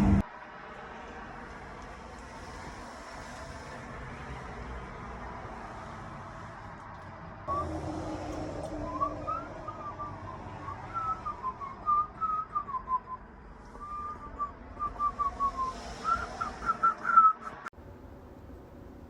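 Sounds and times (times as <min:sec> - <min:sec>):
faint low rumble: 0:00.0 - 0:00.2
person whistling a tune: 0:08.8 - 0:13.2, 0:13.8 - 0:17.5.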